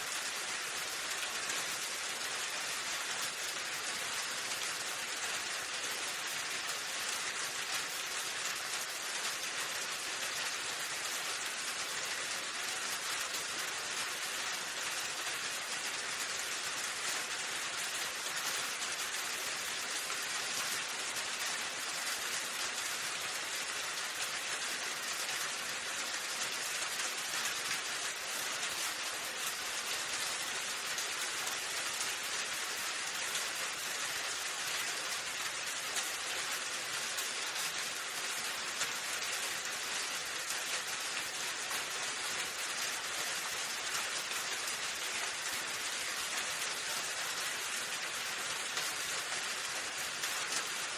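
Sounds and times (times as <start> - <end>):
steady rain falling: 0.0 - 50.9.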